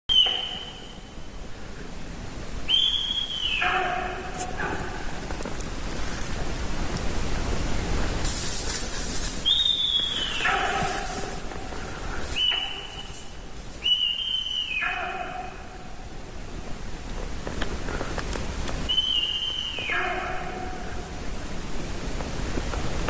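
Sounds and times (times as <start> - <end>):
deer whistling: 0.1 - 1.0, 2.7 - 4.6, 9.4 - 11.2, 12.3 - 15.7, 18.9 - 20.8
steady hiss: 0.1 - 23.0.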